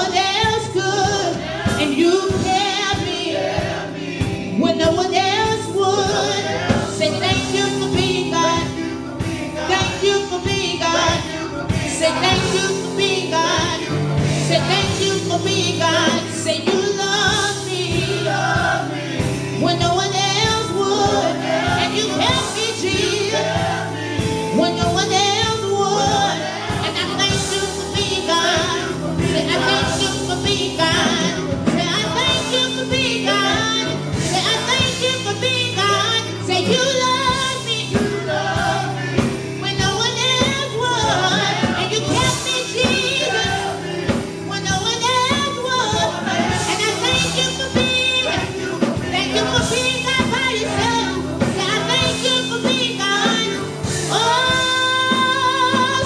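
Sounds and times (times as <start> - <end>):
sustained music accompaniment: 0.0 - 56.0
voices singing worship song: 0.0 - 56.0.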